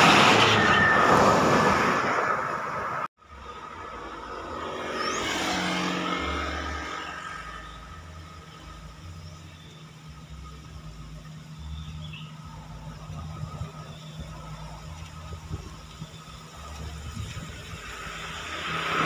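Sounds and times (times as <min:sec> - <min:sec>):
vehicle passing close by: 0:00.0 - 0:08.2, 0:17.0 - 0:19.0
low engine hum: 0:02.4 - 0:19.0.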